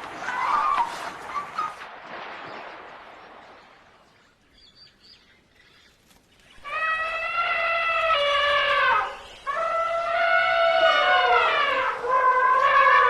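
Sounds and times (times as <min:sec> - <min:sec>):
elephant trumpeting: 0:06.7 - 0:13.0.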